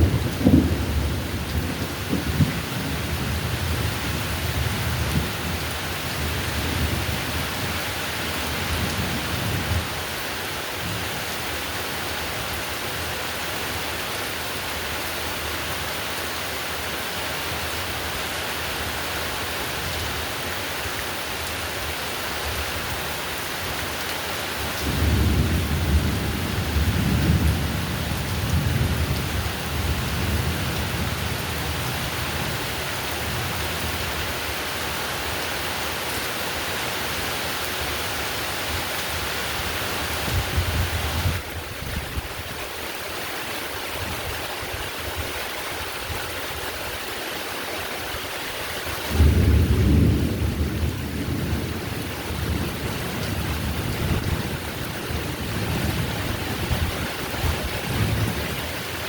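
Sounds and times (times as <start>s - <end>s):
rolling thunder: 0.0s - 7.7s, 24.6s - 31.8s, 49.1s - 59.0s
heavy rain: 0.0s - 59.0s.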